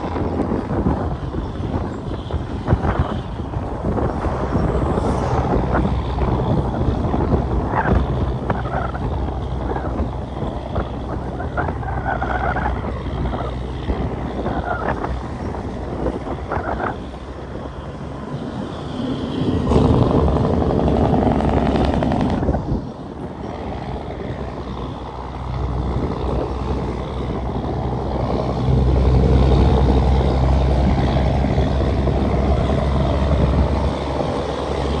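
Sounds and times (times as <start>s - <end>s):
rushing noise: 1.2s - 9.3s.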